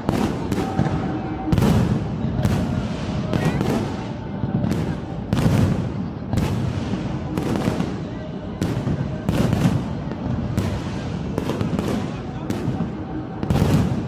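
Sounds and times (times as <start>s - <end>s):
crowd noise rumble: 0.0s - 14.0s
fireworks bursting: 0.0s - 14.0s.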